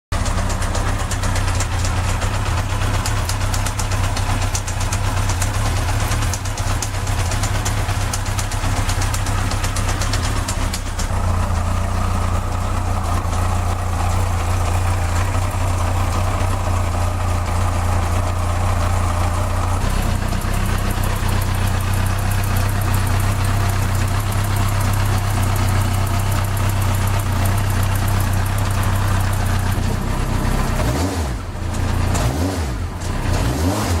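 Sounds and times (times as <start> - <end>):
motorcycle engine idling: 0.2 - 32.2
fast light engine clicking: 0.2 - 34.0.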